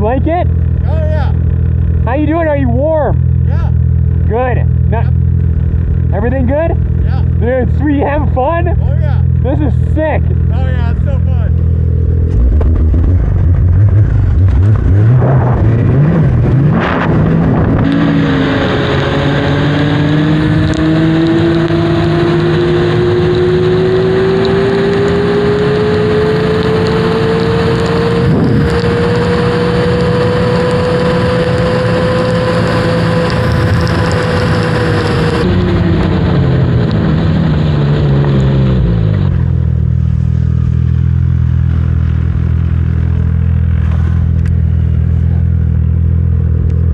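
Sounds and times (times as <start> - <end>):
snowmobile engine: 0.0 - 46.9.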